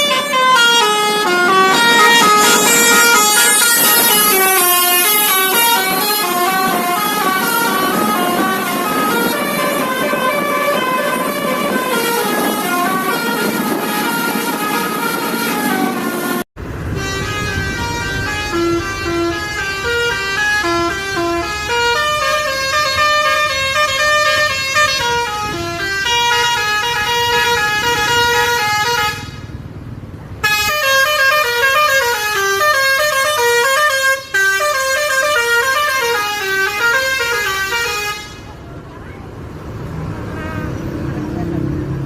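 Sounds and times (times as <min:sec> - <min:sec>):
musical bus horn tune: 0:00.0 - 0:29.5, 0:30.4 - 0:38.6.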